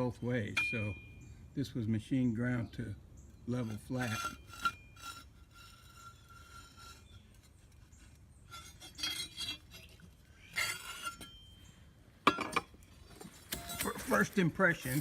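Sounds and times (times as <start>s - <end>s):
faint metallic ringing: 0.0s - 1.4s, 3.5s - 7.4s, 10.6s - 12.8s
metal scraping and clinking on anvil: 3.5s - 7.5s, 8.5s - 11.7s.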